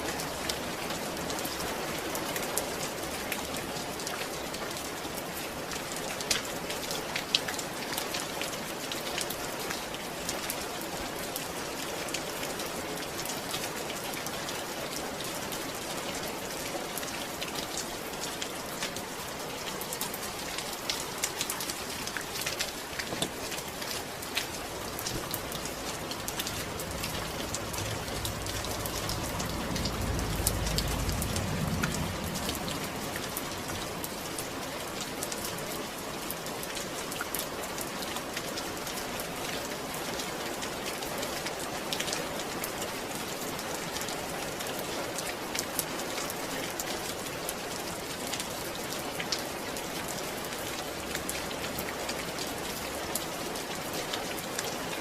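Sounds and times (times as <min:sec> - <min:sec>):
raindrops ticking close by: 0:00.0 - 0:55.0
steady rain: 0:00.0 - 0:55.0
low rumble: 0:24.8 - 0:34.6.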